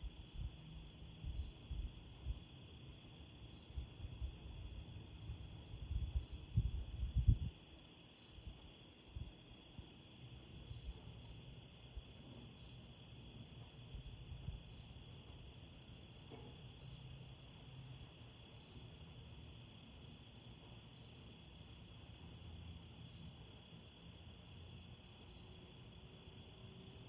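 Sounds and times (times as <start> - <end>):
crickets chirping: 0.0 - 27.0
wind gusting against microphone: 5.6 - 7.6.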